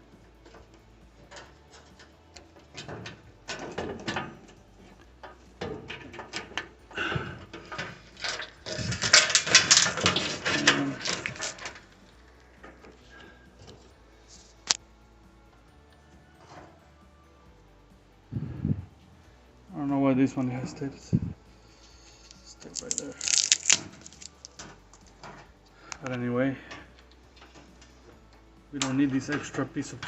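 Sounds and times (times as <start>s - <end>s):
rapid clattering: 5.2s - 12.0s
hands handling parts clicking: 7.4s - 14.8s, 22.2s - 30.0s.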